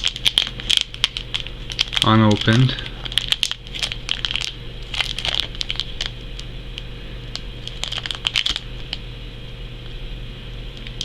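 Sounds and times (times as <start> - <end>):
foil packs crinkling: 0.0 - 6.5, 7.2 - 9.0
steady low hum: 0.0 - 11.0.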